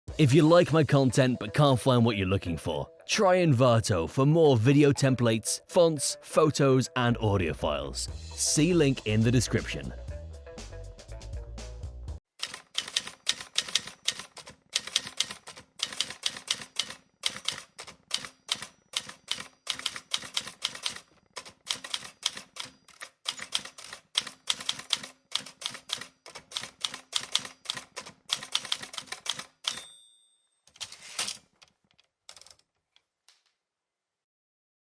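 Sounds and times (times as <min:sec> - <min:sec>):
typewriter keys clacking: 0:12.4 - 0:29.8
typewriter margin bell ringing: 0:18.2 - 0:21.0, 0:29.6 - 0:31.2.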